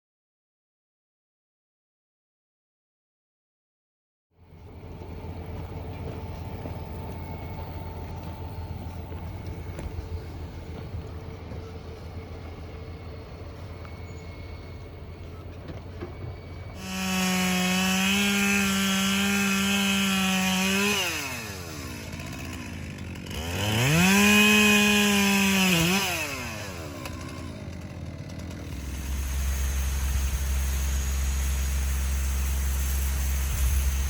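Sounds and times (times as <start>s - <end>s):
chainsaw revving: 16.7s - 34.0s.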